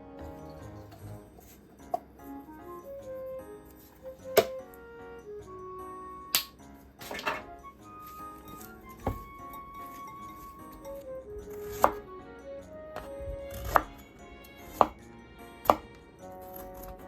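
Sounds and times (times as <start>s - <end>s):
soft background music: 0.0s - 17.0s
knife chopping on cutting board: 4.3s - 4.6s, 8.6s - 9.4s, 11.5s - 12.0s, 13.0s - 14.0s, 14.6s - 15.0s, 15.6s - 17.0s.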